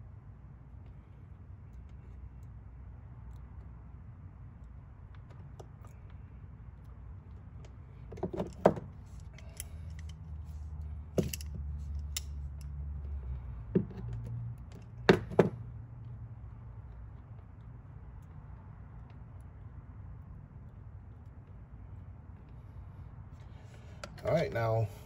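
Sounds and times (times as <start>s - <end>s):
small tools clicking and knocking: 7.6s - 12.8s.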